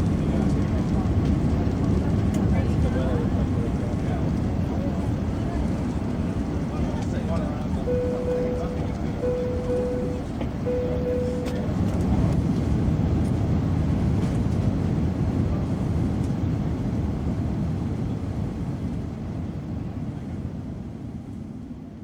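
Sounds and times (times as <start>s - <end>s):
jet engines rumbling: 3.0s - 14.0s
steady tone: 7.8s - 11.9s.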